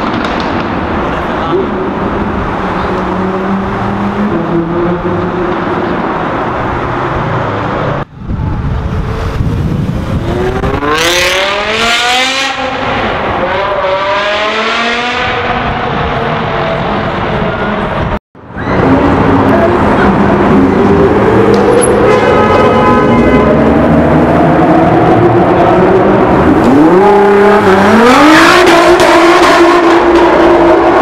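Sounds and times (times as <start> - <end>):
sports car engine in tunnel: 0.0 - 31.0
engine accelerating hard: 9.0 - 17.7.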